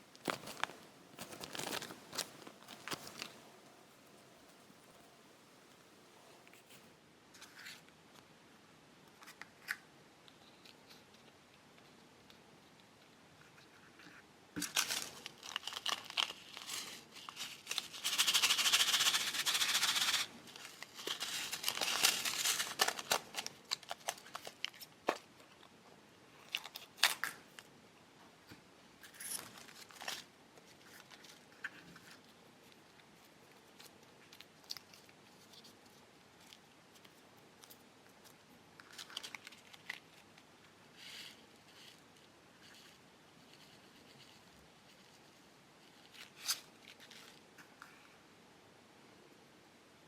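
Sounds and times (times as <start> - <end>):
plastic packets crinkling: 0.0 - 5.8, 14.6 - 25.2, 38.8 - 40.3.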